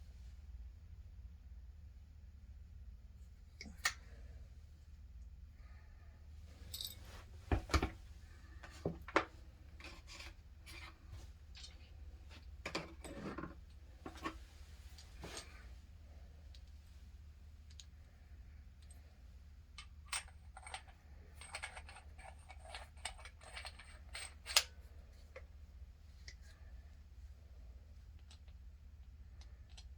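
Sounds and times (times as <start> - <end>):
low steady hum: 0.0 - 29.9.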